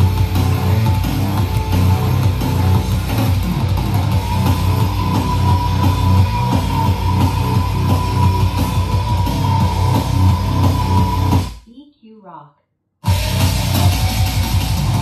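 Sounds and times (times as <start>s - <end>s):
rock song with heavy bass: 0.0s - 11.6s, 13.0s - 15.0s.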